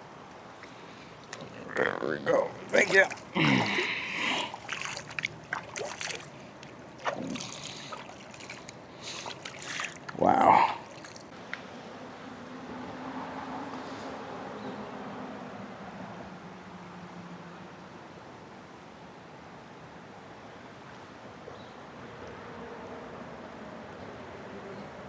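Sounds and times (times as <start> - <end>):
flowing water: 0.0 - 11.4
distant engine humming: 0.0 - 14.4
wind: 0.0 - 25.0.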